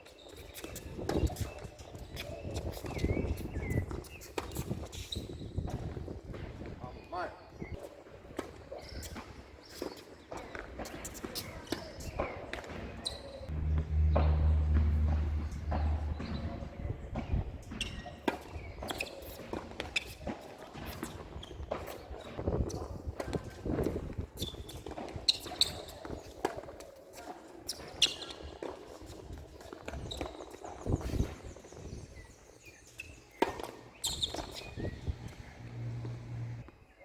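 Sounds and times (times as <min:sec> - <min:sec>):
tennis ball bounces and hits: 0:08.4 - 0:22.0, 0:33.3 - 0:36.6
footsteps on court: 0:09.1 - 0:23.5, 0:32.9 - 0:36.6.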